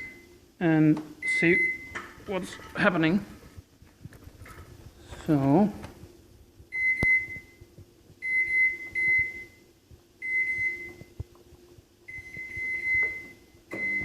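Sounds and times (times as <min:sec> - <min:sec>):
microwave oven beeping: 0:00.0 - 0:00.5, 0:01.2 - 0:02.2, 0:06.7 - 0:11.4, 0:12.0 - 0:14.0
faint low hum: 0:00.0 - 0:14.0.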